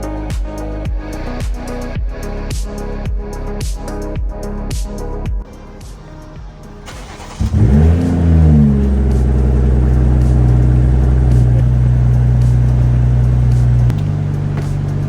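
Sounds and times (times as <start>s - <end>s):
car engine starting and idling: 6.7s - 15.0s.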